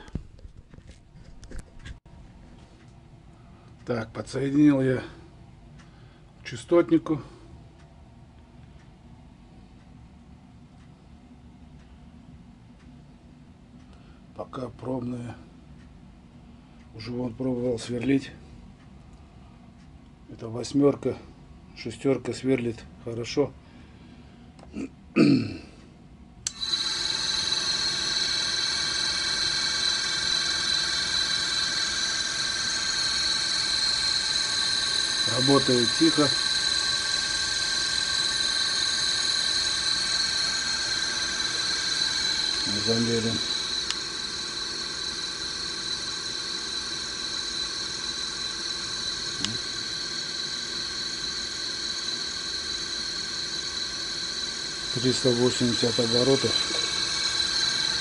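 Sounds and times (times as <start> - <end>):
electric motor whining: 26.5 - 58.0.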